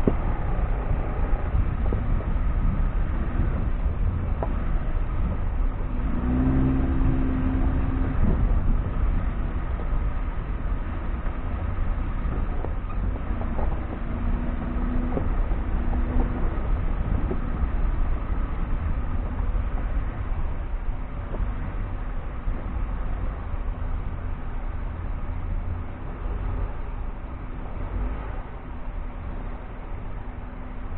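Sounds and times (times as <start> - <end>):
vehicle driving on rough ground: 0.0 - 30.9
engine note rising: 5.9 - 9.8.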